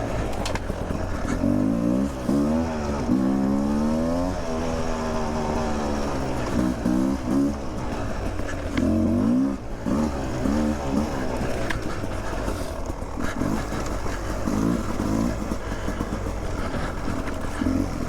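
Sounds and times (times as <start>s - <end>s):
dirt bike engine revving: 0.0s - 18.0s.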